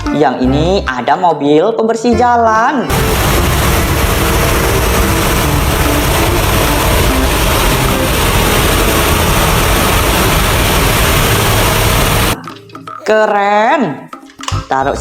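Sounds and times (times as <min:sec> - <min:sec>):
heavy vehicle engine running: 0:02.9 - 0:12.4
loud even hiss: 0:02.9 - 0:12.4.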